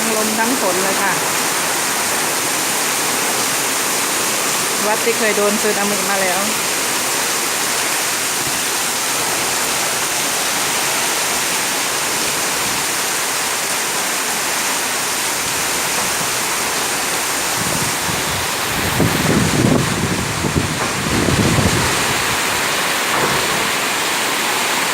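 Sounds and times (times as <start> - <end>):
heavy rain pouring: 0.0 - 24.9
wind buffeting microphone: 17.2 - 23.8.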